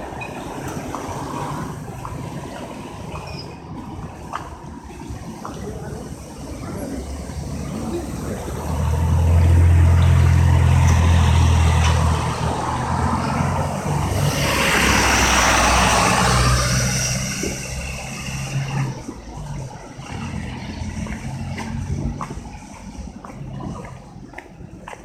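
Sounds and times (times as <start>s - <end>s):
car tyres hissing on wet road: 5.0s - 19.1s
low engine drone: 5.8s - 25.0s.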